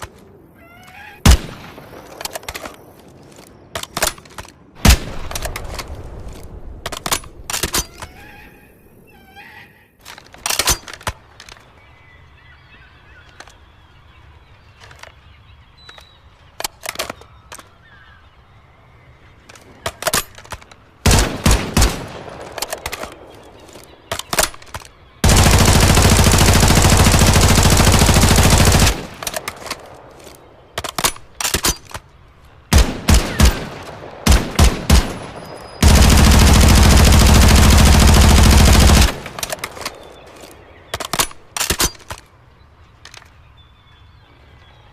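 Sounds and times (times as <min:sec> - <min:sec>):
submachine gun firing: 0:25.2 - 0:29.6, 0:32.7 - 0:39.8.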